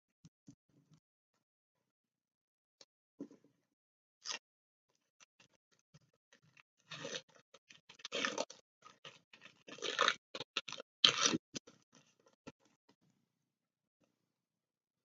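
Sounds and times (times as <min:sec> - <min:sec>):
foil wrapper crinkling and tearing: 0:06.9 - 0:11.7.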